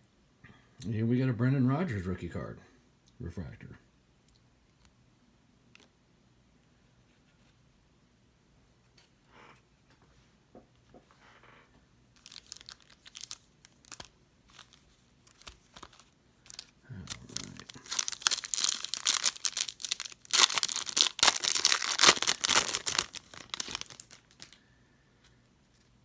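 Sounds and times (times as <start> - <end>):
foil wrapper tearing and crinkling: 12.2 - 24.6
cards clicking: 17.2 - 24.6.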